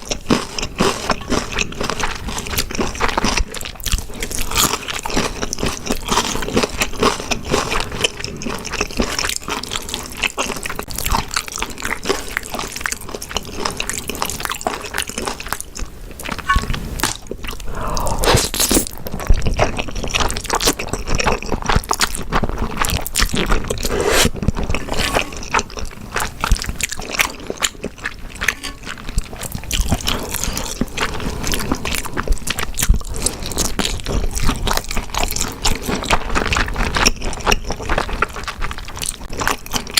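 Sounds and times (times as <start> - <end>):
wet chewing with smacks: 17.0 - 39.9.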